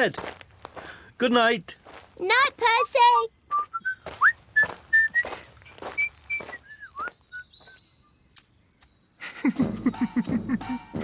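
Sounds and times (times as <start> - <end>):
person whistling a tune: 3.5 - 5.4, 6.0 - 7.4
footsteps: 3.6 - 7.8.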